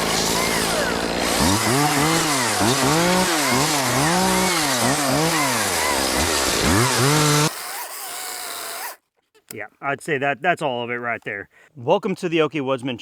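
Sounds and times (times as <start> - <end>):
chainsaw revving in quick blips: 0.0 - 9.0.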